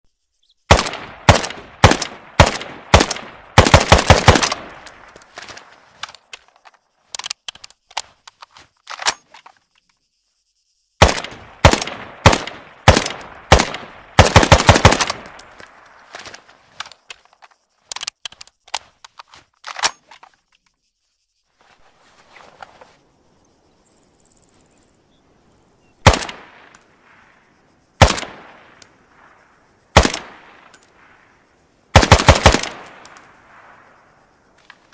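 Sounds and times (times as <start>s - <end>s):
rifle shots with echo: 0.7s - 5.0s, 11.0s - 15.5s, 26.0s - 27.1s, 28.0s - 29.3s, 29.9s - 31.1s, 31.9s - 33.8s.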